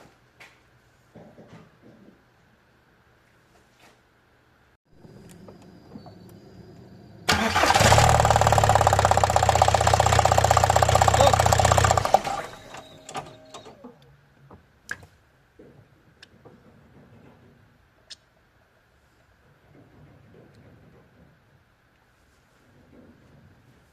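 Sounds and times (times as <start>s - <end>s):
car engine cranking: 7.2s - 13.8s.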